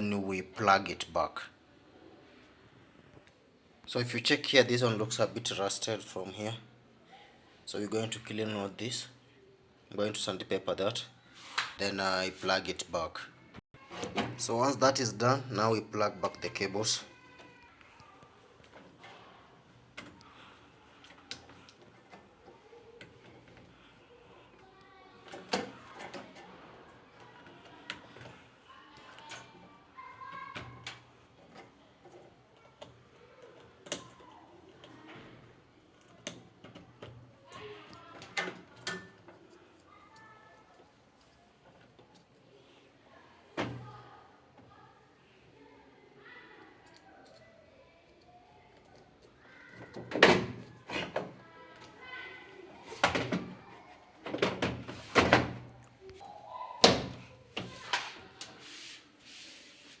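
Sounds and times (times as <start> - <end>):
appliance panels knocking and clunking: 54.2 - 55.7.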